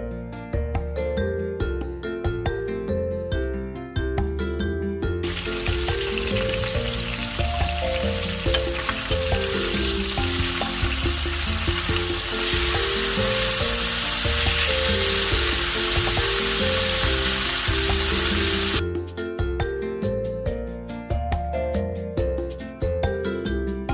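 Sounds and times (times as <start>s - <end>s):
background music: 0.0s - 23.9s
chicken sizzling in hot oil: 5.2s - 18.8s.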